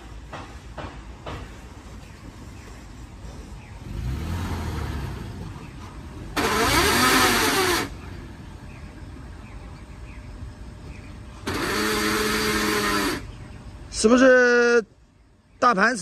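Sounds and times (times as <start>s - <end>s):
car engine starting: 3.2s - 10.2s
harsh grinding with wavering whine: 4.1s - 9.8s, 10.4s - 14.1s.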